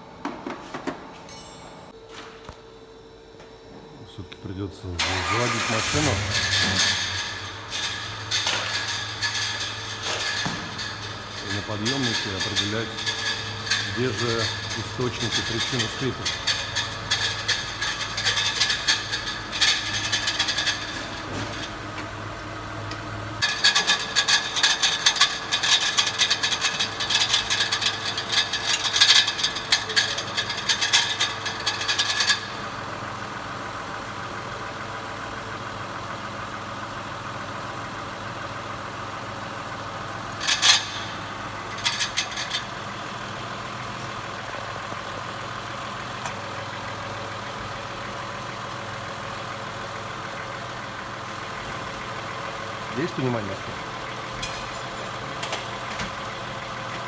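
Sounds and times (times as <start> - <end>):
metallic rattling and scraping: 5.0 - 34.8, 38.7 - 57.0
car engine running: 5.0 - 57.0.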